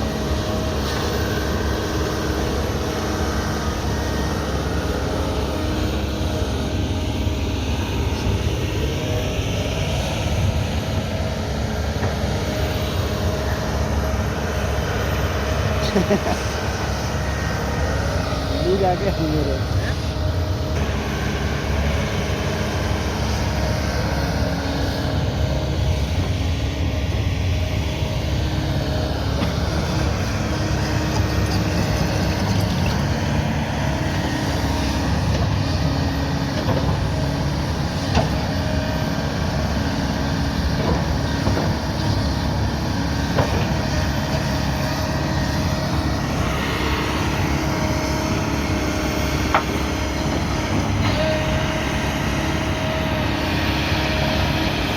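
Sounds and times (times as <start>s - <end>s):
excavator diesel engine running: 0.0s - 54.9s.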